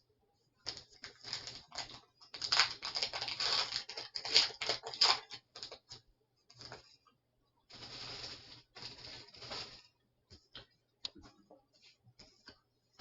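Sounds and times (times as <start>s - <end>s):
foil wrapper crinkling: 0.7s - 5.9s, 7.7s - 9.9s.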